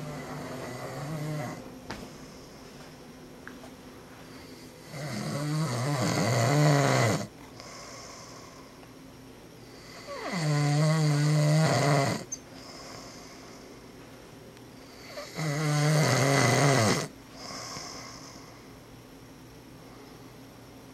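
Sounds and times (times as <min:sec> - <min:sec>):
man snoring: 0:00.0 - 0:01.6, 0:04.6 - 0:08.6, 0:09.8 - 0:13.5, 0:14.9 - 0:18.5.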